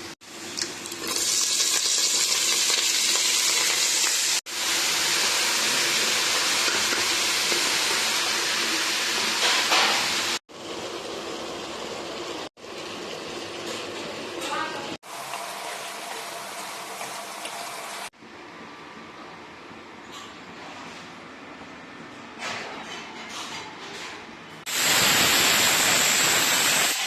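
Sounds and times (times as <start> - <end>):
food sizzling in hot oil: 0.2 - 13.0, 24.7 - 27.0.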